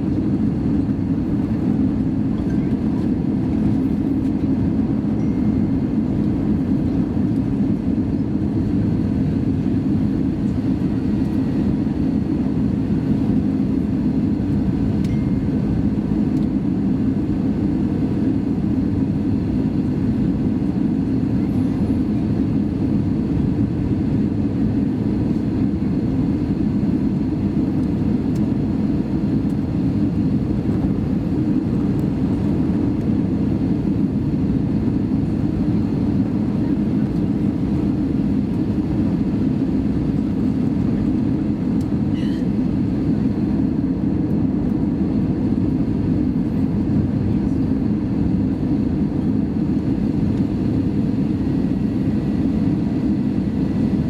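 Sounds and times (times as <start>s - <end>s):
airplane cabin noise: 0.0s - 54.0s.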